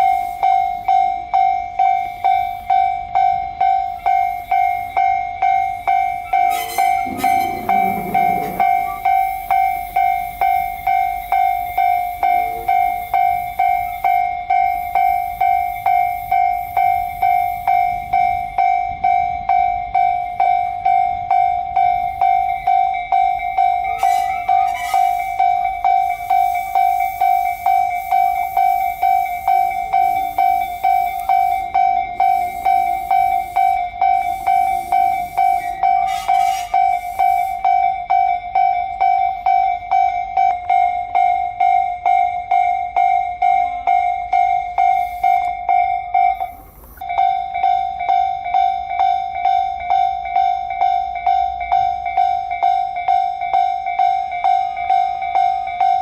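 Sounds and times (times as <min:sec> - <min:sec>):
level crossing bell ringing: 0:00.0 - 0:56.0
rushing hiss: 0:24.0 - 0:37.7, 0:44.9 - 0:45.5, 0:46.4 - 0:47.0.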